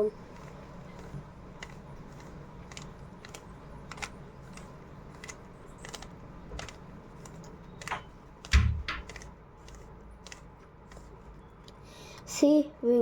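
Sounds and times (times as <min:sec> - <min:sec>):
puzzle cube plastic clicks: 0:00.2 - 0:11.1.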